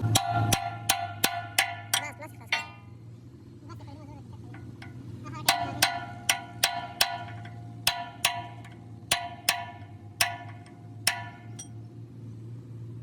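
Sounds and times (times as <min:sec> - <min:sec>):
hammer ringing on steel: 0:00.0 - 0:02.9, 0:04.4 - 0:11.8
steady low hum: 0:00.0 - 0:13.0.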